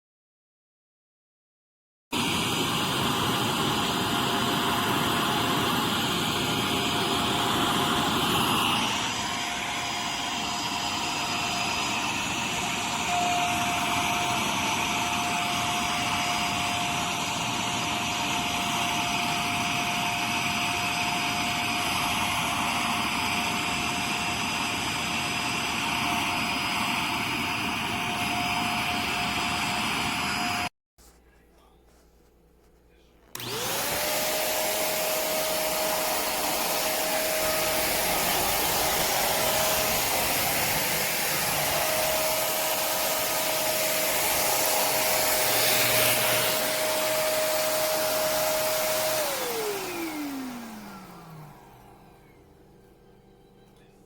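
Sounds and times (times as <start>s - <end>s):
vacuum cleaner motor whine: 2.1s - 30.7s, 33.3s - 54.0s.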